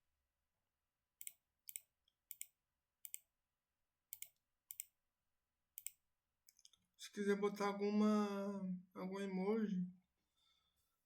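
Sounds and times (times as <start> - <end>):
computer mouse clicking: 1.2 - 3.3, 4.1 - 4.9, 5.8 - 6.8.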